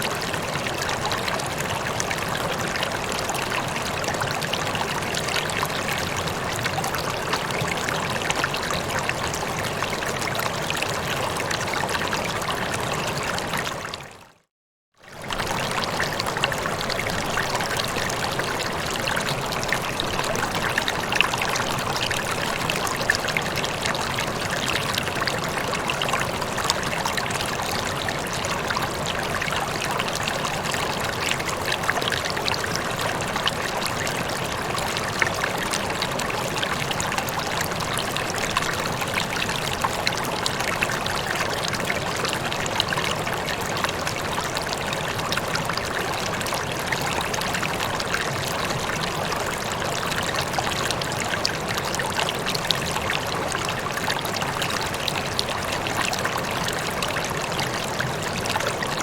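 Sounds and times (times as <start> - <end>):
water trickling: 15.1 - 59.0.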